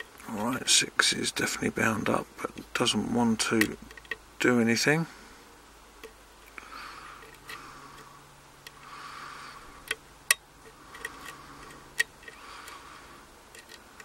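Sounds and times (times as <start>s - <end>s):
lock pick scraping metal: 7.2s - 8.0s, 9.8s - 12.8s, 13.5s - 14.0s.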